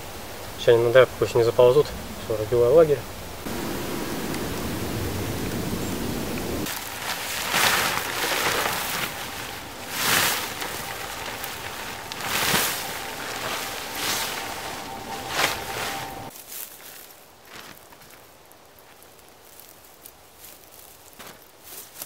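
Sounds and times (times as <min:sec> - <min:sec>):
rustling through dry leaves: 0:03.4 - 0:22.0
low rumble: 0:03.5 - 0:06.7.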